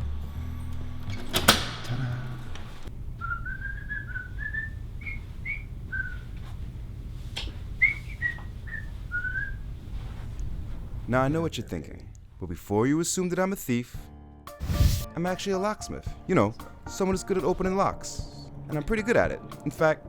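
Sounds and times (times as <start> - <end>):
person whistling a tune: 3.2 - 6.2, 7.8 - 9.6.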